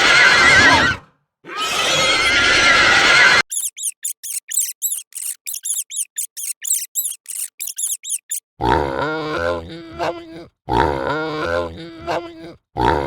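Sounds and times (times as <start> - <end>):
mice squeaking: 3.4 - 8.4.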